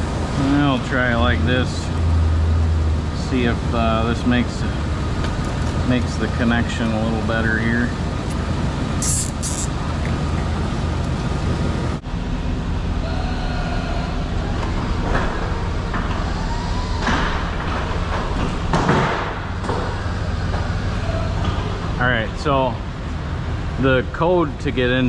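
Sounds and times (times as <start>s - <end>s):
truck engine idling: 0.0s - 13.1s
short hissing noises: 9.0s - 9.8s
knocking noises: 17.0s - 20.0s.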